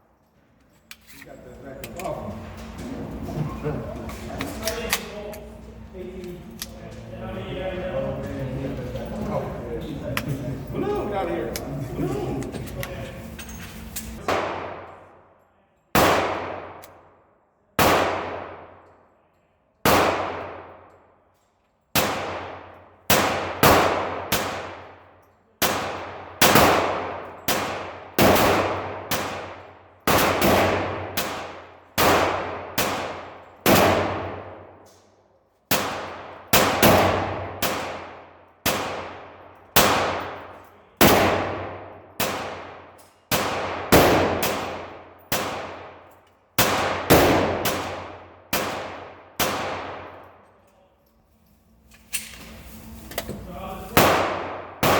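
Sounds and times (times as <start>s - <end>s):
pistol shots echoing: 14.2s - 15.2s, 15.9s - 17.2s, 17.8s - 19.0s, 19.8s - 21.0s, 21.9s - 25.0s, 25.6s - 34.9s, 35.7s - 50.5s, 53.9s - 54.9s.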